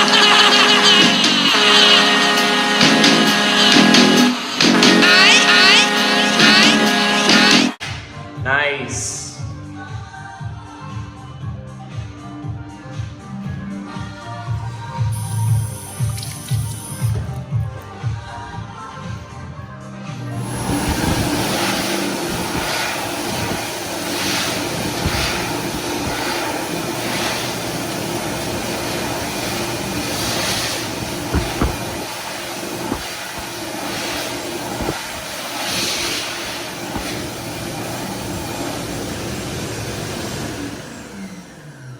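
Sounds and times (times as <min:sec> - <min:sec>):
hand dryer running: 0:00.0 - 0:07.8, 0:20.2 - 0:41.9.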